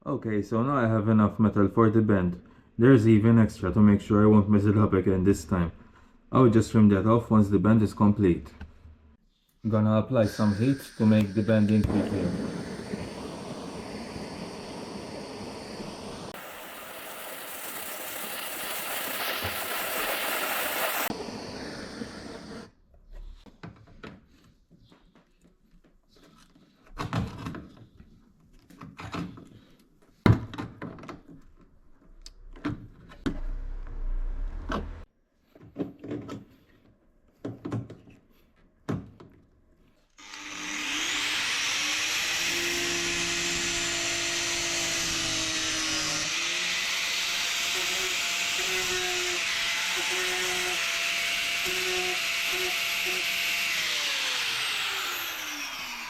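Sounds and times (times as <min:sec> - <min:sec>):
heat gun blowing: 0:10.2 - 0:22.7, 0:40.2 - 0:56.0
heat gun spinning up: 0:10.4 - 0:22.7, 0:40.2 - 0:56.0.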